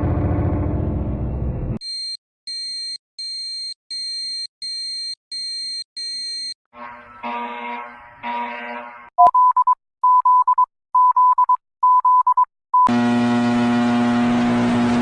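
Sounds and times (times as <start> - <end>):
harsh buzzing alarm tone: 6.4 - 9.1
buzzy electronic tone: 6.8 - 9.1.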